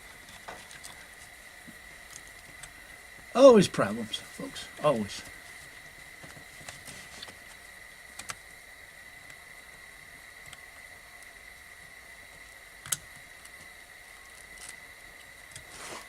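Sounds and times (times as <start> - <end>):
low hiss: 0.0 - 16.0
steady high-pitched tone: 3.3 - 5.3.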